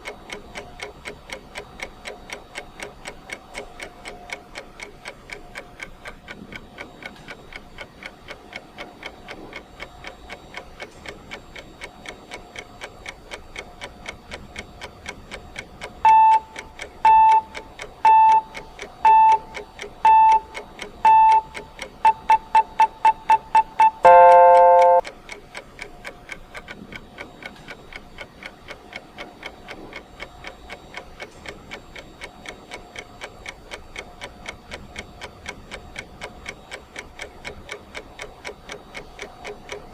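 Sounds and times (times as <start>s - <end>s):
clock ticking: 0.0s - 39.9s
electronic beeps: 21.1s - 25.0s
long electronic tone: 23.8s - 25.0s.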